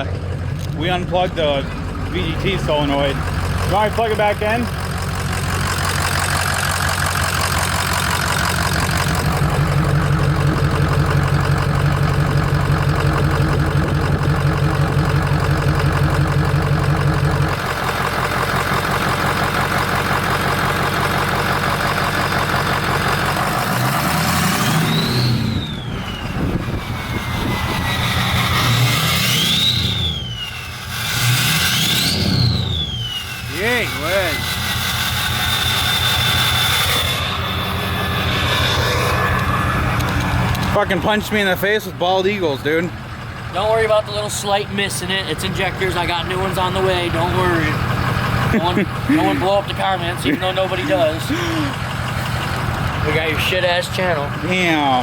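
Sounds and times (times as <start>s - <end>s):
diesel engine idling: 0.0s - 55.0s
engine revving: 0.0s - 55.0s
turbo whistle: 24.4s - 39.9s.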